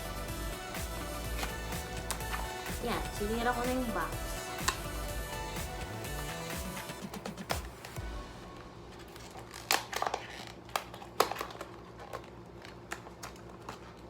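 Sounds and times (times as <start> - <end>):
packaging clicks and snaps: 9.0 - 14.0.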